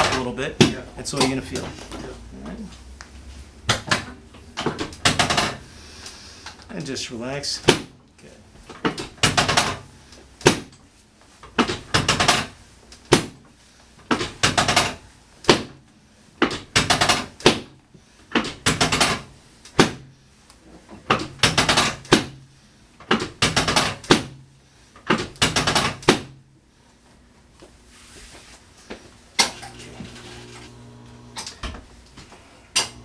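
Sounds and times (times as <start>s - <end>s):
chiropractic table clunks: 3.7s - 5.7s, 8.7s - 10.8s, 21.0s - 24.4s.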